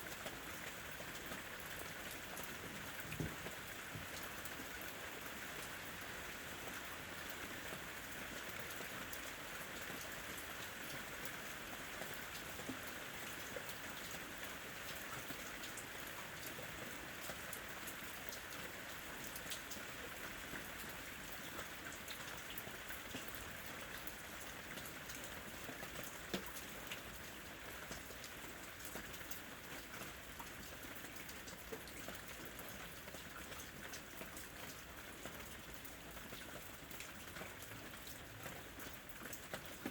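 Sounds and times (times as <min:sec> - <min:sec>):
steady rain hiss: 0:00.0 - 0:31.6
raindrops ticking on surfaces: 0:00.0 - 0:39.9.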